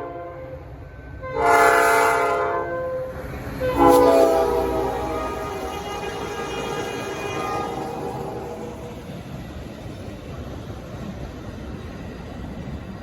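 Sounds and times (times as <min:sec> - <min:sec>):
locomotive air horn blasts: 0:00.0 - 0:00.6, 0:01.2 - 0:09.0
low train rumble: 0:00.0 - 0:13.0.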